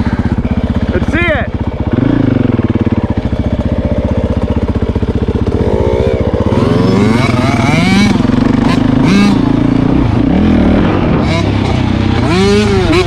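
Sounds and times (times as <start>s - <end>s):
dirt bike engine running: 0.0s - 13.0s
second engine revving: 5.4s - 13.0s.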